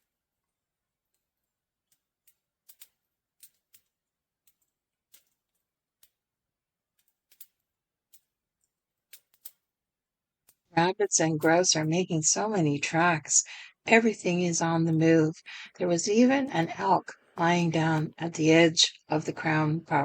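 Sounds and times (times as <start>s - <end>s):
faint clicks and snaps: 1.9s - 6.2s, 6.9s - 9.6s.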